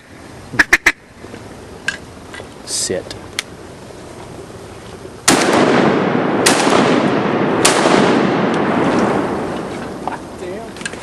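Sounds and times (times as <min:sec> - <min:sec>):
shotgun blasts: 0:05.2 - 0:09.6
long rolling echo: 0:05.2 - 0:10.8.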